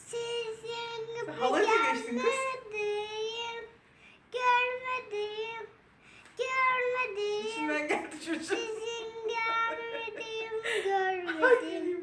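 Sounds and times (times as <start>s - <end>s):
girl singing: 0.0s - 3.7s.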